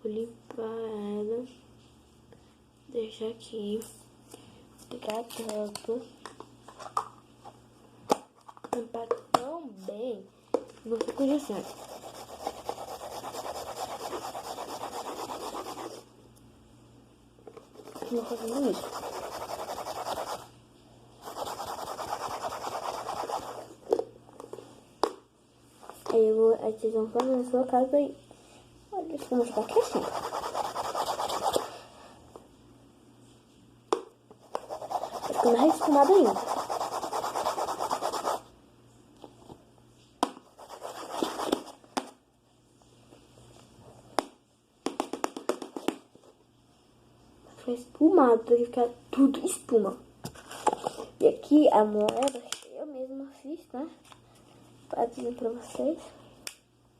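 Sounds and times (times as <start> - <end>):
rhythmic scratching whisking foam: 11.2 - 16.0, 17.7 - 20.5, 21.2 - 23.8, 29.3 - 31.7, 34.6 - 38.4, 40.6 - 41.7.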